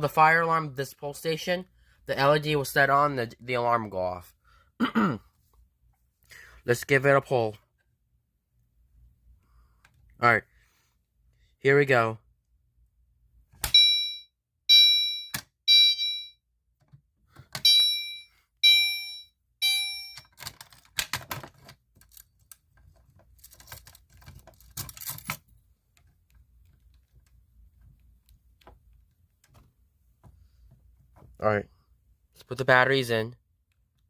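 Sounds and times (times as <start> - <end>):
fire alarm horn blasts: 13.8 - 16.4, 17.6 - 20.2.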